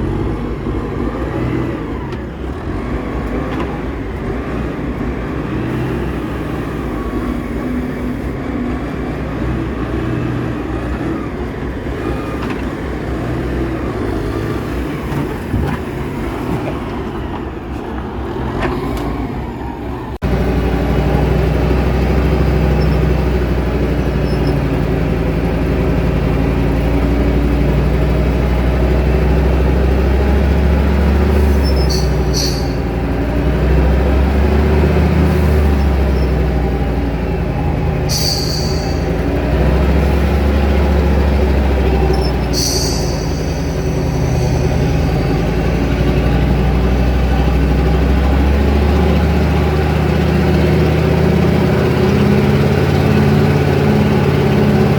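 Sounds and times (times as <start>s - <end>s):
heavy truck engine running: 0.0s - 54.9s
short high squeaks: 24.1s - 24.7s, 31.3s - 33.1s, 38.1s - 39.2s, 41.9s - 45.6s.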